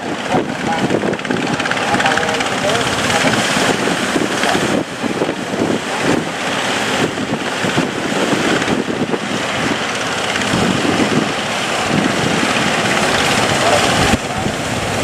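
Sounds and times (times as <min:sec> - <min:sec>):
boat engine: 0:00.0 - 0:15.0
rushing water: 0:00.0 - 0:15.0
wind buffeting microphone: 0:00.0 - 0:15.0.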